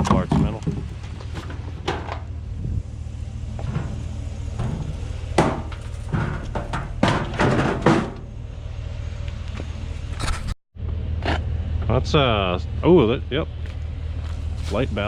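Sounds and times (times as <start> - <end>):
scrap clattering and rattling: 0.0 - 10.6
steady low hum: 0.0 - 15.0.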